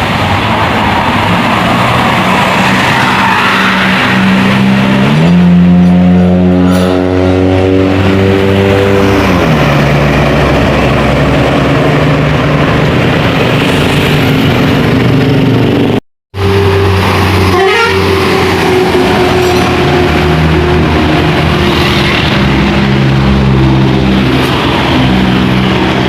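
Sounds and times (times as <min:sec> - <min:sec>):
bus engine: 0:00.0 - 0:26.0
passing traffic: 0:00.0 - 0:26.0
multi-tone bus horn melody: 0:05.0 - 0:09.5, 0:16.4 - 0:23.9.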